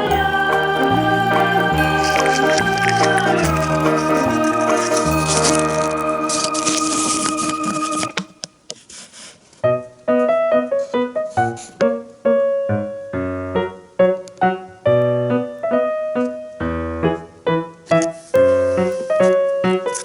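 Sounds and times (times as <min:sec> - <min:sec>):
piano-like melody with steady beat: 0:00.0 - 0:08.2.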